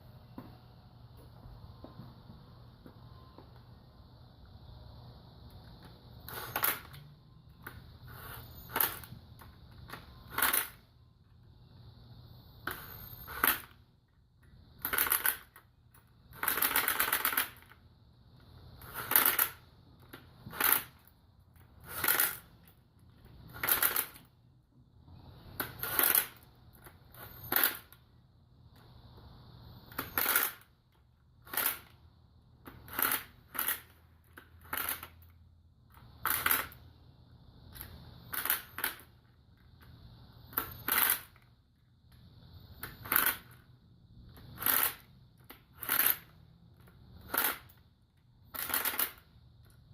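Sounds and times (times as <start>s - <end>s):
ratchet wrench clicking: 42.8s - 43.7s.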